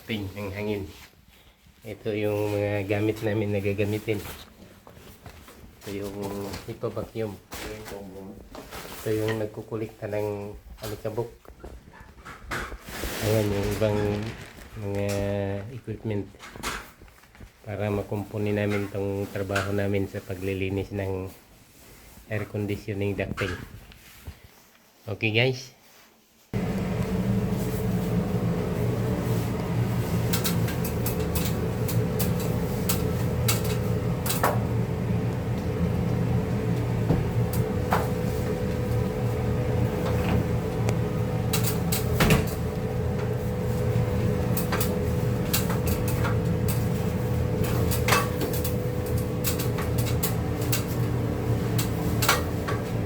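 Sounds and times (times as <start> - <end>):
machine humming: 26.6 - 53.0.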